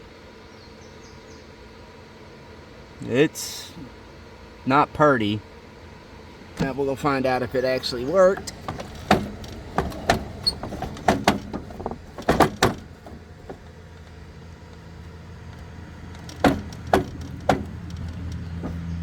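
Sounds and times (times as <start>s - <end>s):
low steady hum: 0.0s - 19.0s
metal knocks and clanks: 7.9s - 14.2s, 15.5s - 19.0s.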